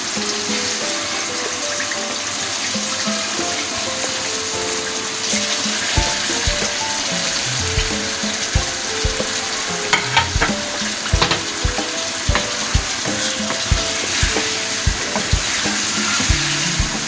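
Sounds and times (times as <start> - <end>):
chicken sizzling in hot oil: 0.0 - 17.0
spoon knocking against pan: 9.9 - 16.9.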